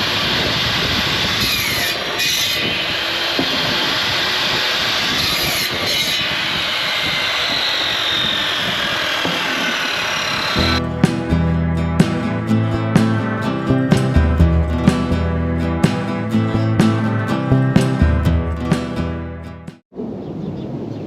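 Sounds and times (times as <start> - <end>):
band sawmill cutting log: 0.0 - 18.0.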